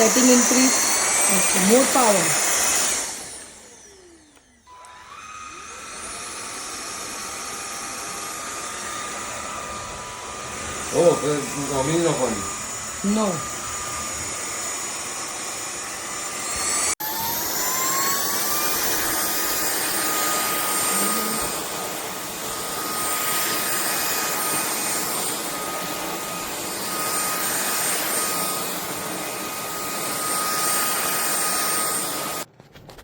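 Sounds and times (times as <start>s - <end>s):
stick vacuum motor whine: 0.0s - 32.5s.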